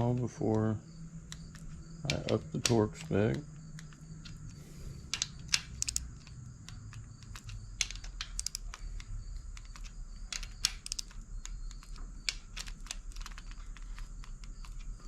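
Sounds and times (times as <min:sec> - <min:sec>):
torque wrench clicking: 0:05.1 - 0:14.8.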